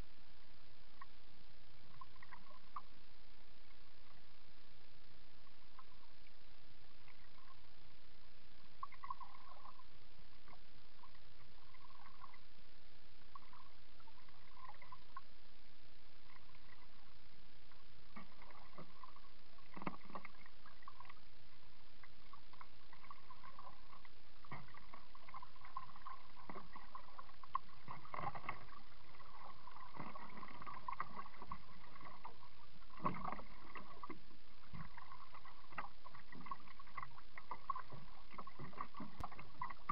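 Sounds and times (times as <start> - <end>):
paddle water splashes: 18.1 - 21.2, 22.1 - 39.9.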